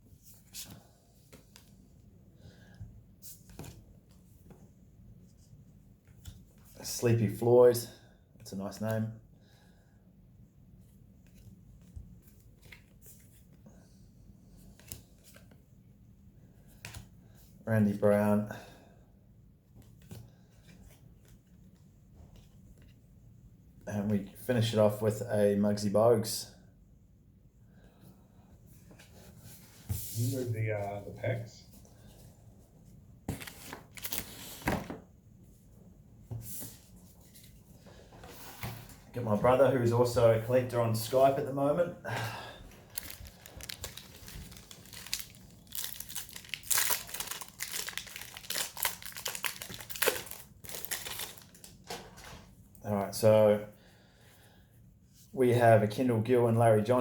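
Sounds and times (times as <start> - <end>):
pack wrapper crinkling: 42.9 - 51.8.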